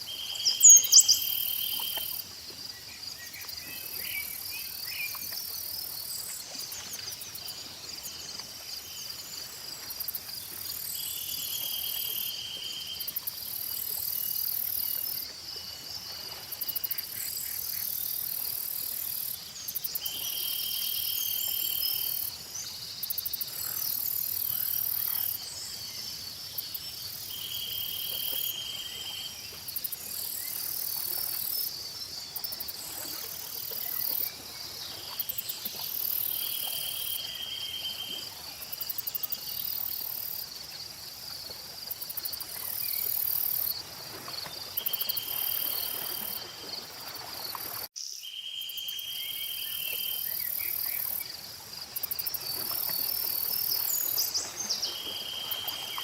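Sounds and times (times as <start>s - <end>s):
crickets chirping: 0.0s - 56.0s
short insect trill: 0.2s - 2.2s.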